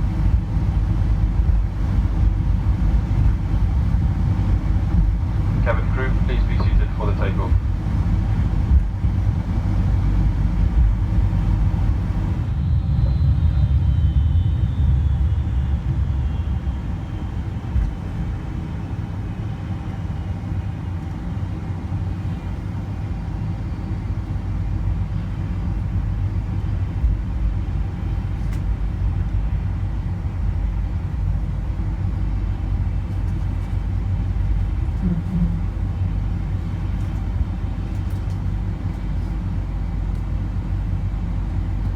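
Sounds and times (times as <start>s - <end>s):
airplane cabin engine rumble: 0.0s - 41.9s
faint falling whine: 10.8s - 20.4s.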